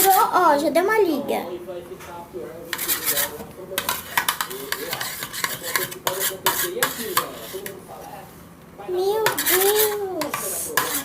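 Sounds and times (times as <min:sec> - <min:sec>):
utensil scraping a bowl: 0:00.0 - 0:00.3, 0:02.6 - 0:07.8, 0:09.2 - 0:11.0.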